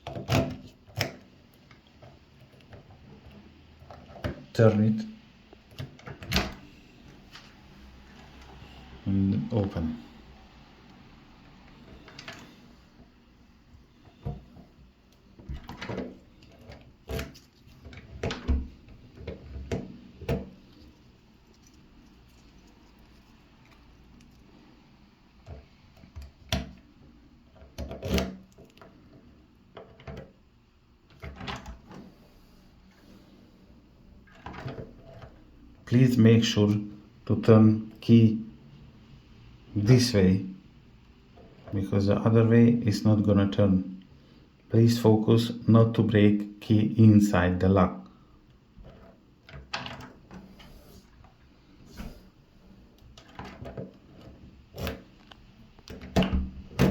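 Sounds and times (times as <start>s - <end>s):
door lock clicking and clunking: 5.7s - 6.7s.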